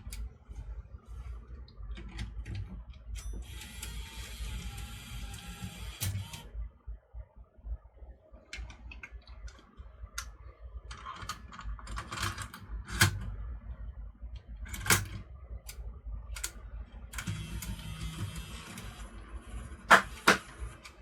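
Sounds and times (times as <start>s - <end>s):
camcorder mechanism whirring: 3.2s - 6.5s, 16.4s - 21.0s.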